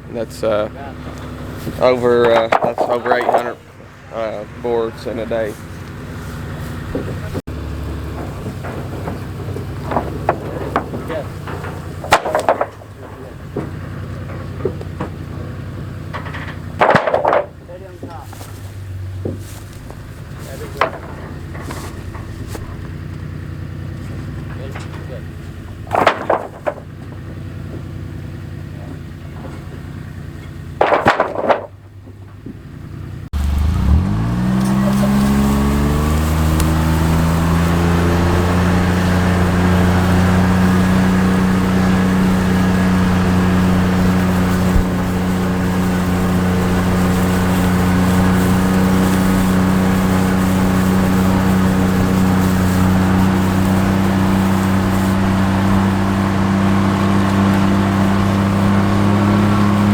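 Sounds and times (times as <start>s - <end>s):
vehicle engine speeding up: 0.1s - 16.6s, 33.2s - 59.9s.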